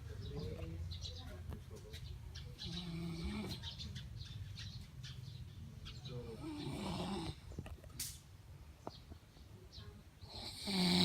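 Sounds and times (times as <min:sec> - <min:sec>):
low snore with rough breathing: 0:02.6 - 0:03.7, 0:06.1 - 0:07.5, 0:10.2 - 0:11.0.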